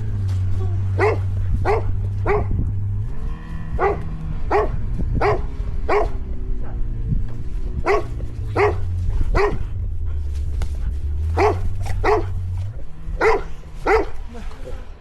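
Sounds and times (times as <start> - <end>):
steady engine hum: 0.0 - 15.0
dog barking: 0.8 - 2.7, 3.7 - 7.1, 7.7 - 9.8, 11.2 - 14.4.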